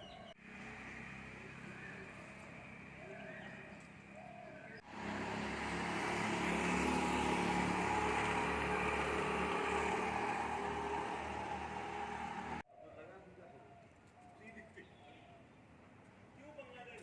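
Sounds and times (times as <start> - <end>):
road noise: 0.0 - 12.7
vehicle engine running: 4.8 - 12.6.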